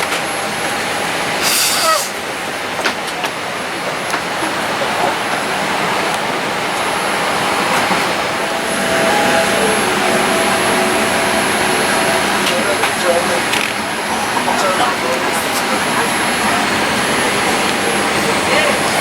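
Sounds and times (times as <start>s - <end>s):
cabin ventilation air hissing: 1.4s - 2.4s.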